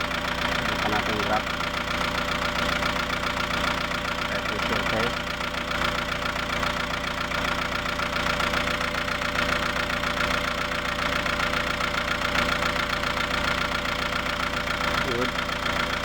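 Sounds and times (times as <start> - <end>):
diesel engine idling: 0.0 - 16.0.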